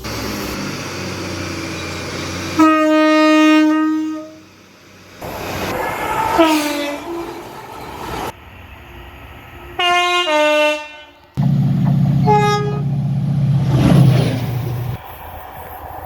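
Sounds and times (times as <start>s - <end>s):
passing train hum: 0.0s - 16.0s
train horn blasts: 2.6s - 4.5s, 6.3s - 7.3s, 9.8s - 13.5s.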